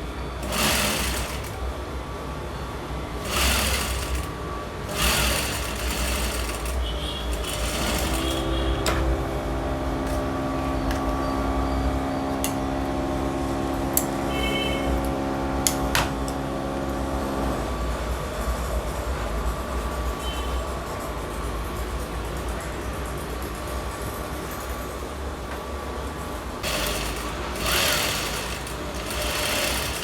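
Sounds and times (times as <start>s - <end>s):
sewing machine stitching: 0.4s - 1.8s, 3.2s - 9.2s, 26.6s - 30.0s.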